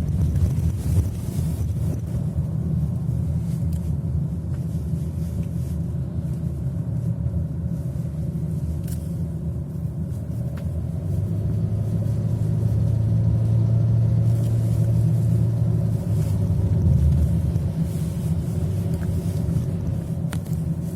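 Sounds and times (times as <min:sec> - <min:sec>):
diesel engine under load: 0:10.8 - 0:20.9.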